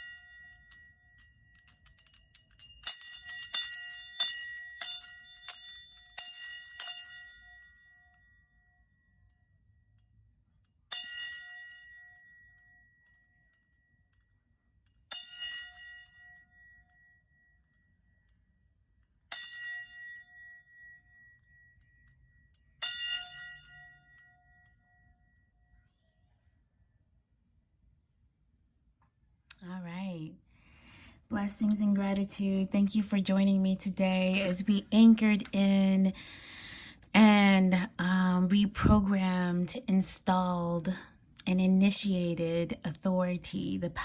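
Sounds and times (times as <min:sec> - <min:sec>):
small metal chime ringing: 0:00.0 - 0:10.2, 0:10.9 - 0:14.4, 0:15.1 - 0:18.4, 0:19.3 - 0:26.0.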